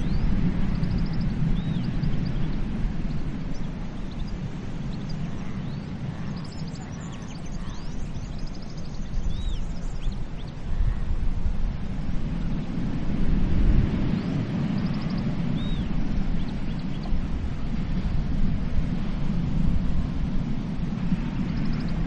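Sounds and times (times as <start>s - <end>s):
small birds chirping: 0.0s - 11.1s, 13.9s - 18.4s, 21.3s - 22.0s
ocean waves washing onto beach: 0.0s - 22.0s.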